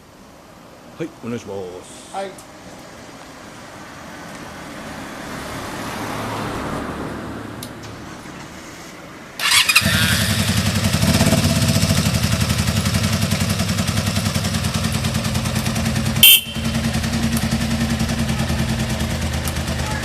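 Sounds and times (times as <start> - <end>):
electric starter cranking: 9.4 - 10.8
motorcycle engine idling: 9.4 - 20.0.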